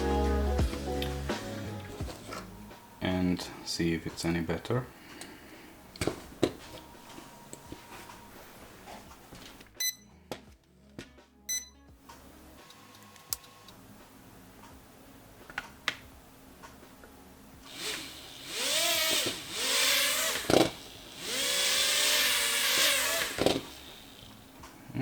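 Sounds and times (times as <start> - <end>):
small drone motors whining: 17.7 - 24.4.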